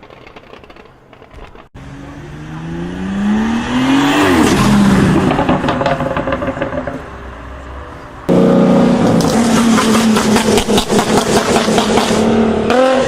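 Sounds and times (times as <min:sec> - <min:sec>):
exhaust pops and crackles: 0:00.0 - 0:01.8, 0:05.1 - 0:07.0, 0:09.0 - 0:12.2.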